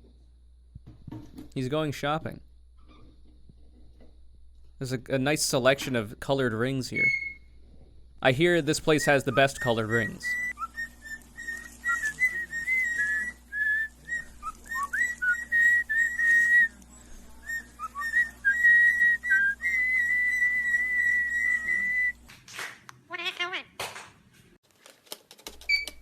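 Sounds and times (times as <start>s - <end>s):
parrot whistling: 7.0s - 7.5s, 9.0s - 22.2s.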